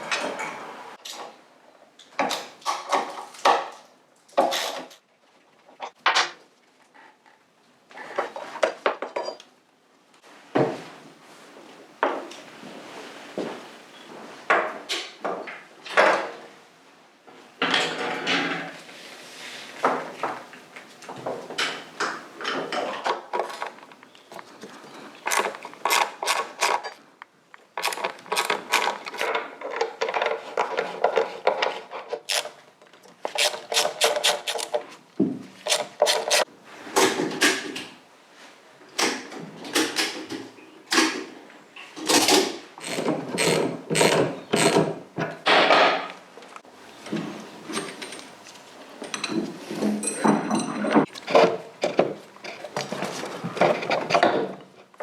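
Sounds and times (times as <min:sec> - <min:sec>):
metal tools clinking and knocking: 0:49.0 - 0:53.0.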